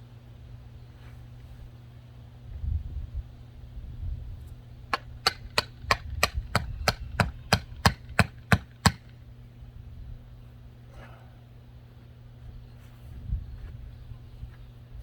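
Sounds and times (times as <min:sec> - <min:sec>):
steady low hum: 0:00.0 - 0:15.0
hammer knocking nails into wood: 0:05.0 - 0:09.1.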